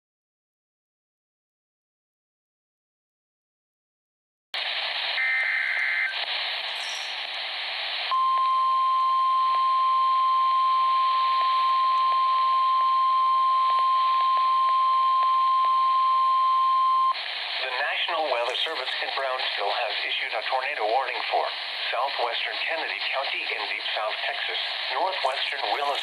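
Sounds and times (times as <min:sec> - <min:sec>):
radio hiss: 0:04.6 - 0:08.9, 0:17.1 - 0:26.0.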